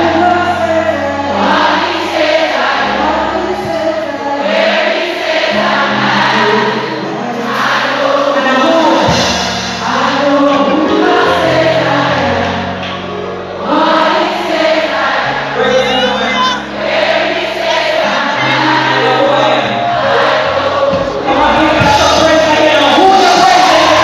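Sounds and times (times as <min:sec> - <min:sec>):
choir singing: 0:00.0 - 0:24.0
band with sustained bass: 0:18.0 - 0:24.0.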